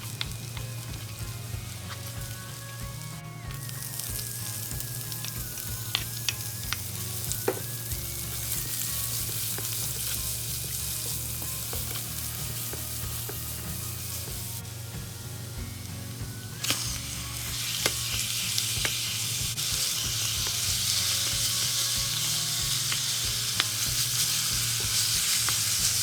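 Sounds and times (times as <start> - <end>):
food sizzling in a pan: 0.0 - 26.0
utensil clicking against pan: 3.5 - 14.5, 16.6 - 26.0.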